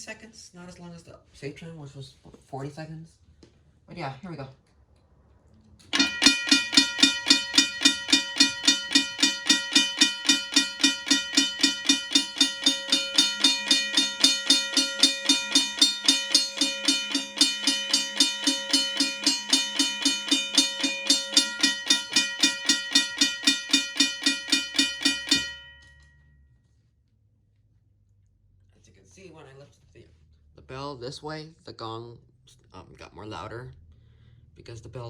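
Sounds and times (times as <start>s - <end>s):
mechanical bell ringing: 5.9s - 26.2s.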